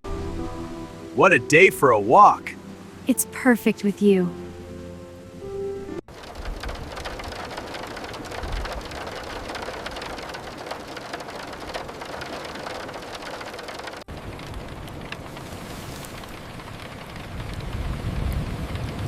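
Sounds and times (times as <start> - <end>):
steady rain falling: 6.1 - 19.0.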